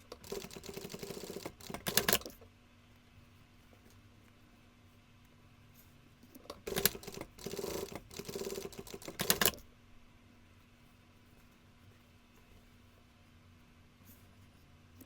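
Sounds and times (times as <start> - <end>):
sewing machine rattling: 0.0 - 2.3, 6.5 - 9.6.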